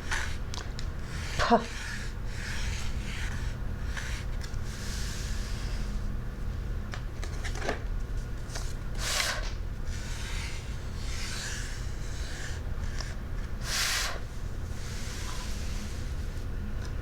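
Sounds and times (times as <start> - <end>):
fingertips rubbing sandpaper: 0.0 - 5.9, 9.0 - 13.0
person saying p sound: 1.4 - 1.9.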